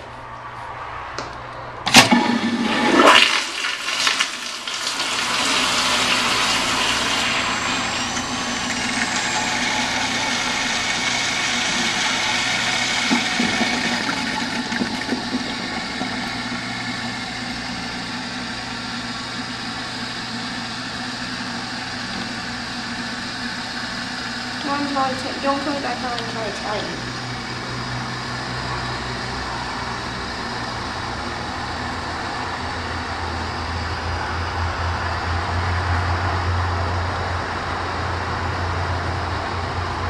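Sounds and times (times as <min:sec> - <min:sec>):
water hissing as tank refills: 0:01.9 - 0:28.8
toilet flushing: 0:01.9 - 0:33.9.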